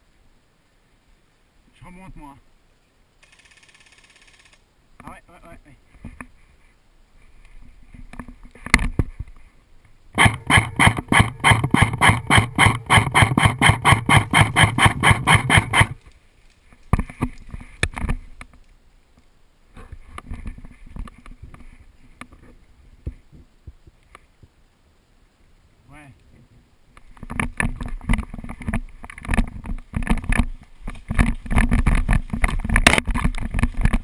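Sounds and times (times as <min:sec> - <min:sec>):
single sharp shot: 0:10.2 - 0:15.9
airsoft gun rapid firing: 0:10.2 - 0:16.0.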